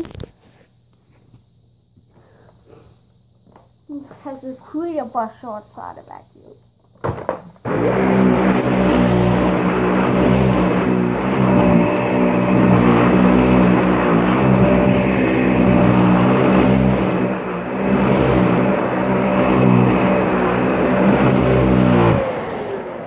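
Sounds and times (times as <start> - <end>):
vacuum cleaner motor whining: 7.7 - 23.0.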